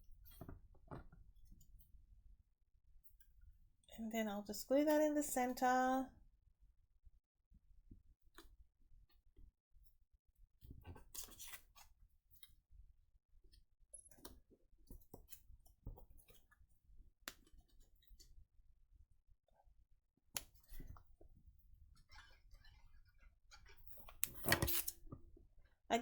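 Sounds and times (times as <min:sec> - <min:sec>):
paper and card being handled: 0:24.1 - 0:25.0.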